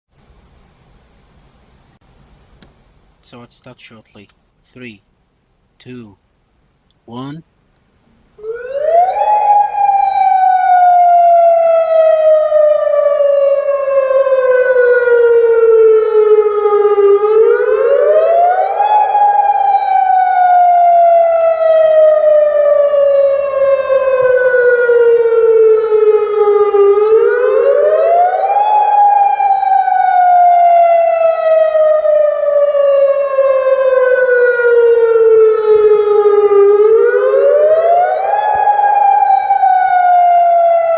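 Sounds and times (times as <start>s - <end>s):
alarm siren wailing: 8.4s - 40.9s.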